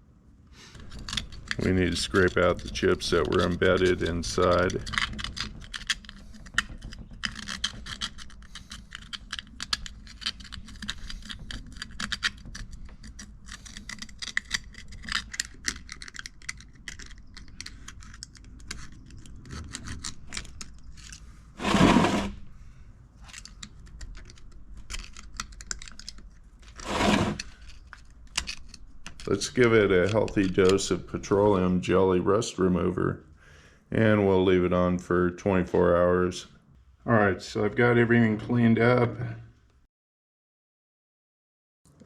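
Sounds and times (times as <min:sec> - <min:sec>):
metal scratching on metal: 0:00.8 - 0:15.2, 0:21.6 - 0:22.5, 0:26.8 - 0:27.8.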